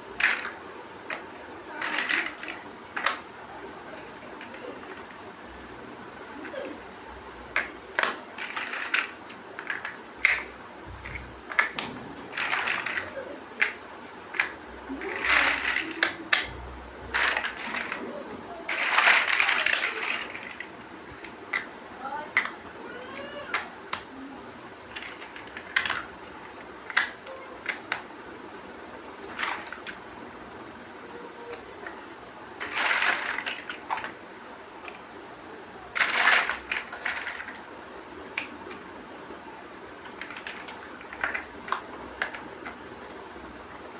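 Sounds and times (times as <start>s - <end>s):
plastic bricks clattering: 0.0s - 3.2s, 7.6s - 24.0s, 24.9s - 28.0s, 29.0s - 30.0s, 31.5s - 34.2s, 35.8s - 37.7s, 40.0s - 43.2s
plastic pieces rattling: 0.0s - 3.2s, 7.6s - 24.0s, 24.8s - 28.0s, 29.0s - 30.0s, 31.5s - 35.1s, 35.9s - 37.7s, 40.0s - 43.2s
plastic bricks snapping together: 0.2s - 3.2s, 7.5s - 18.1s, 18.7s - 21.7s, 22.3s - 22.6s, 23.2s - 24.1s, 24.9s - 28.1s, 36.0s - 37.6s, 40.0s - 43.2s.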